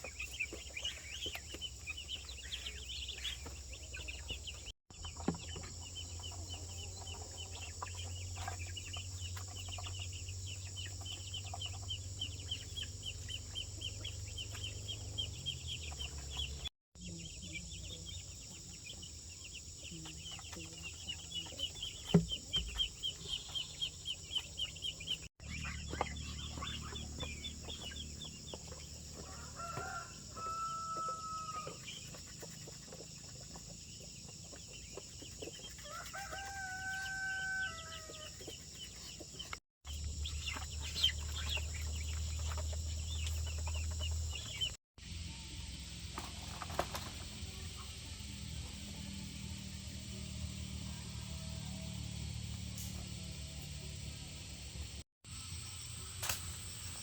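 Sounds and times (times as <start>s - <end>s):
insects buzzing: 17.2s - 39.2s
rooster crowing: 29.1s - 31.8s, 35.8s - 38.3s.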